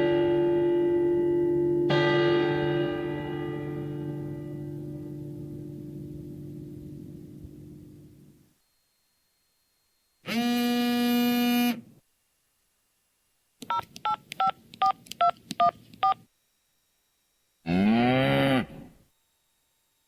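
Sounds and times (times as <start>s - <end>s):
buzzy pitched tone: 0.0s - 11.9s, 17.3s - 19.1s
cow mooing: 17.7s - 19.0s.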